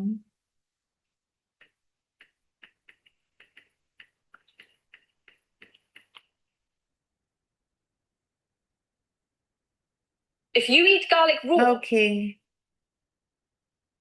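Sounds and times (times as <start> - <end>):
computer clicking: 1.6 - 6.4.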